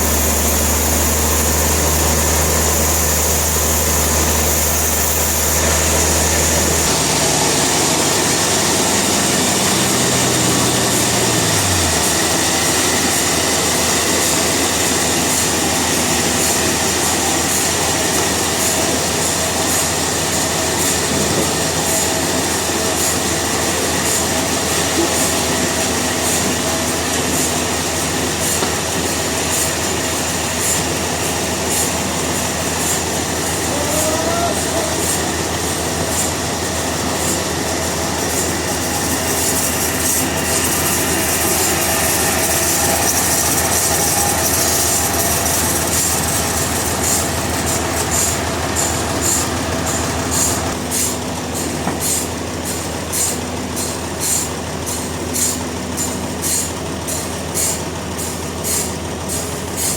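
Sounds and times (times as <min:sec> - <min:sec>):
low motor hum winding down: 0:00.0 - 0:17.5
high mechanical whine: 0:00.0 - 0:59.9
sawmill machinery din: 0:00.0 - 0:59.9.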